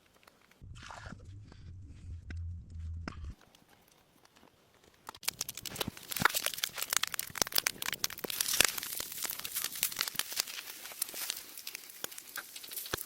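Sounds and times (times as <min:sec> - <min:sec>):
material crinkling and crackling: 0:03.3 - 0:13.0.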